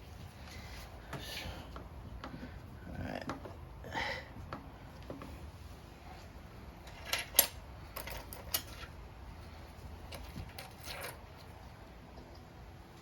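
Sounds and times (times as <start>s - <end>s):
metal parts clinking and rattling: 6.8s - 9.0s, 10.1s - 11.2s.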